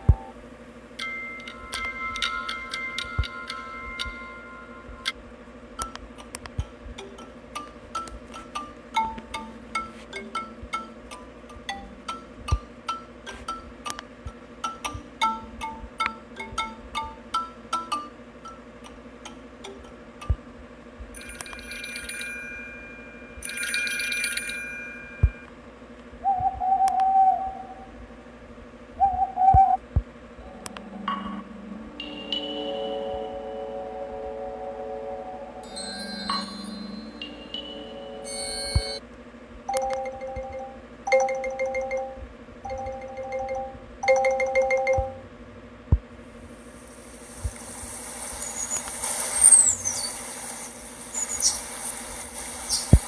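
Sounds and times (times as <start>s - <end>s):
steady electronic tones: 0.0s - 0.4s, 30.4s - 39.0s
shimmering high chimes: 1.0s - 5.1s, 21.2s - 25.5s, 30.4s - 39.0s
warbling hoot-like tones: 26.2s - 28.2s, 29.0s - 29.8s.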